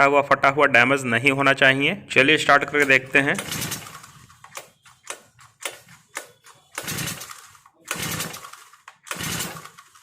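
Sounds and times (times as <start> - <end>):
recoil starter cord pulls: 2.8 - 10.0
short clicks: 4.4 - 6.9.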